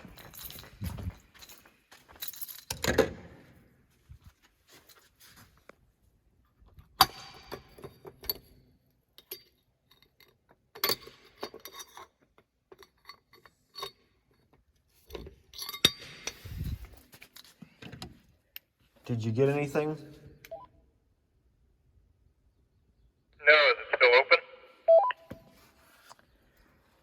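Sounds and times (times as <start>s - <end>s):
keys jangling: 0.0s - 3.1s.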